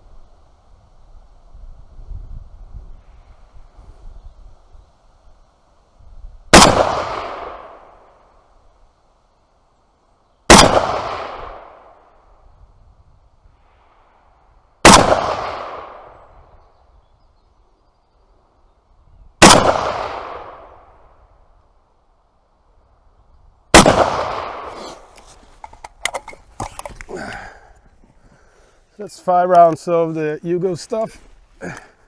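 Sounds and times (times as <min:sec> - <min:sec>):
rifle shots echoing: 0:06.5 - 0:07.9, 0:10.5 - 0:11.7, 0:14.8 - 0:16.1, 0:19.4 - 0:20.6, 0:23.7 - 0:25.0.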